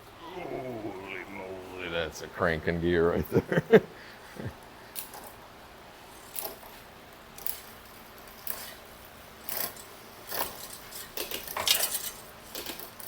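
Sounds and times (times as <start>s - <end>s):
metal parts clinking and rattling: 9.4s - 13.0s.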